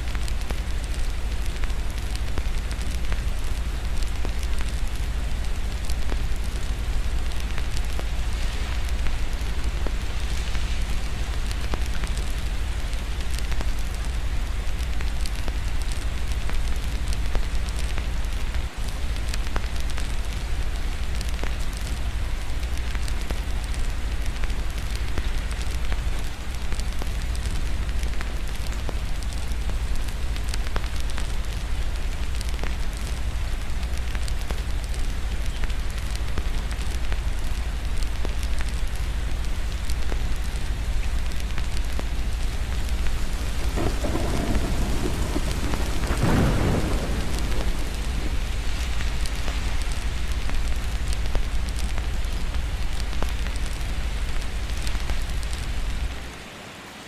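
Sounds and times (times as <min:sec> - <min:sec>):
steady rain: 0:00.0 - 0:57.0
low rumble: 0:40.8 - 0:52.6
distant thunder: 0:42.4 - 0:51.4.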